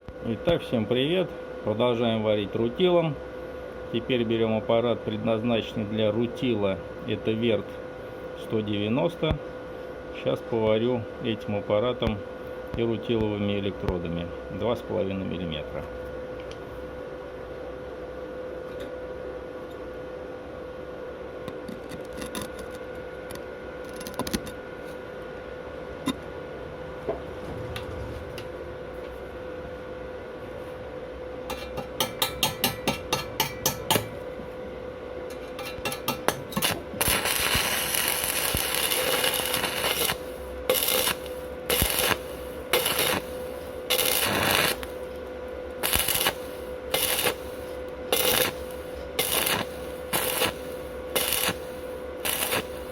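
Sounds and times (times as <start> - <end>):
welder hum: 26.0 - 52.9
welding arc crackling: 35.6 - 52.9.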